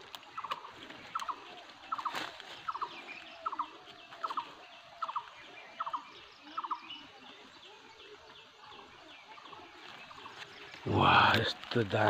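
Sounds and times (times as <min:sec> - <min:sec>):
faint bird chirps: 0:00.0 - 0:11.6.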